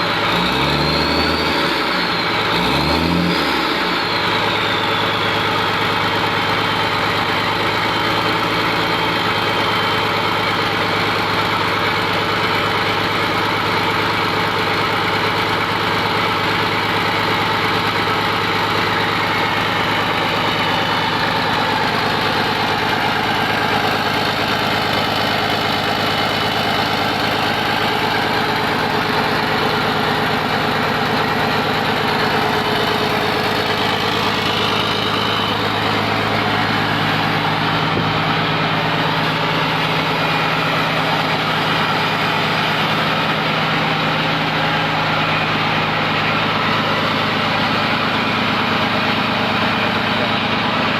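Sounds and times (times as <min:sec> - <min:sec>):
diesel engine running: 0:00.0 - 0:50.9.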